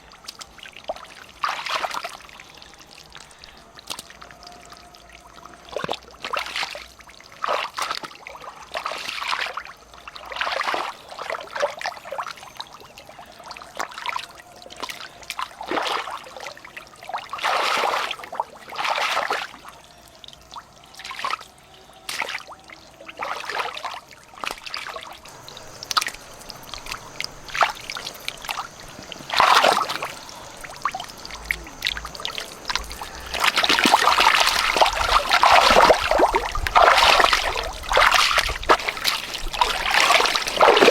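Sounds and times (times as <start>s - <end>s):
water splashing and pouring: 0.0s - 40.9s
water trickling: 0.0s - 40.9s.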